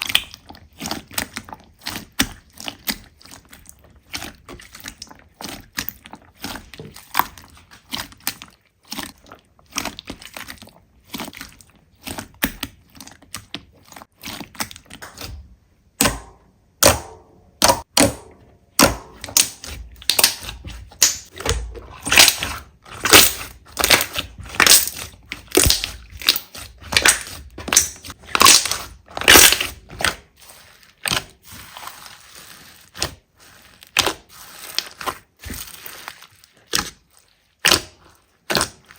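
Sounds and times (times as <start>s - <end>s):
slime crackling and popping: 16.0s - 38.9s.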